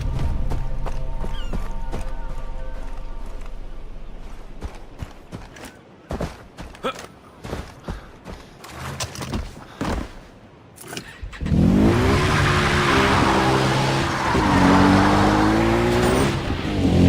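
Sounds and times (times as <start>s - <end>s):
tyre and road noise: 0.0s - 17.0s
racing car engine revving: 11.4s - 17.0s.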